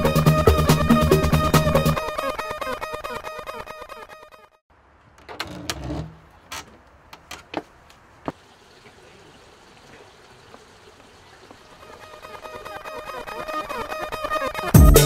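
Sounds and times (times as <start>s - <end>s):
music: 0.0s - 4.6s, 12.0s - 15.0s
sharp clicks and knocks: 5.1s - 8.0s
faint steady hiss: 6.2s - 12.0s.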